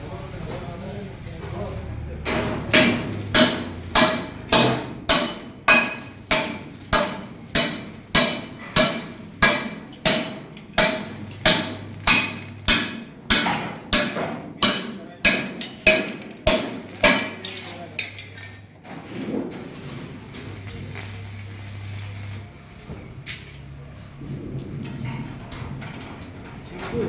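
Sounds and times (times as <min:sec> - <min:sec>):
hammer striking steel: 0:02.2 - 0:18.5.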